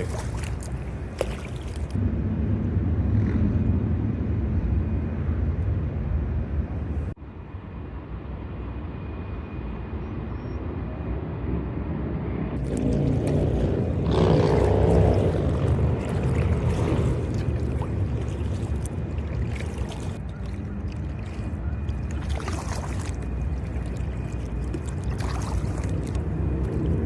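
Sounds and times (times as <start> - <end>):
kayak paddle splashing: 0.0 - 2.0, 12.6 - 27.0
road traffic rumble: 0.0 - 7.1, 12.6 - 27.0.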